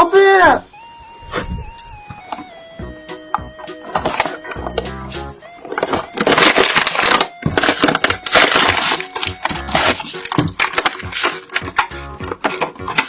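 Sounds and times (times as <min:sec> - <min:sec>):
crinkly packaging being torn: 0:05.5 - 0:13.0.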